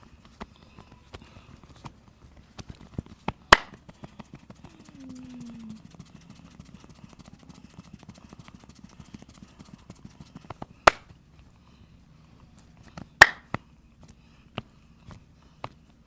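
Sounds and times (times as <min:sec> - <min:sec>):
hand taps and pats on body: 0:02.6 - 0:05.0, 0:06.0 - 0:11.1, 0:12.9 - 0:15.9
loud sharp cracks: 0:03.6 - 0:03.8, 0:13.2 - 0:13.4.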